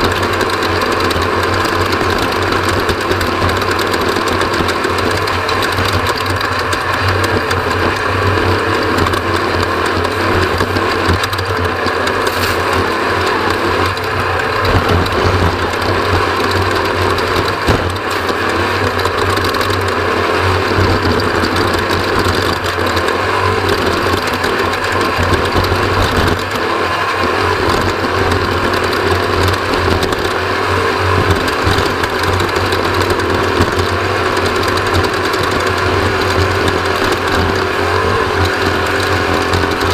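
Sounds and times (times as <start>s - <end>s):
race vehicle engine running hard: 0.0s - 39.9s
vehicle knocks: 13.5s - 19.8s.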